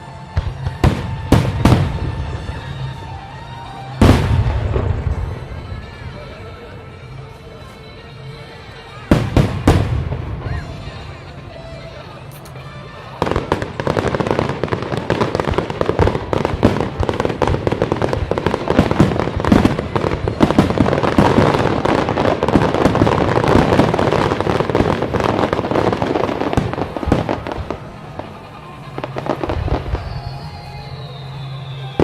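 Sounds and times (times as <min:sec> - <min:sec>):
fireworks bangs and crackling: 0:00.0 - 0:32.0
falling firework whistle: 0:13.1 - 0:32.0.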